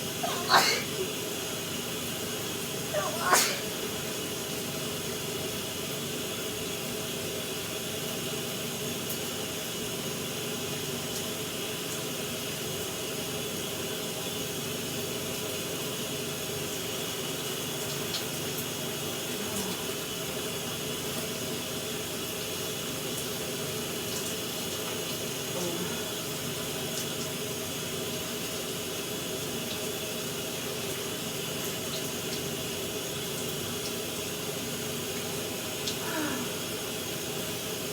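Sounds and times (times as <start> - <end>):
shower water spray hissing: 0.0 - 5.0.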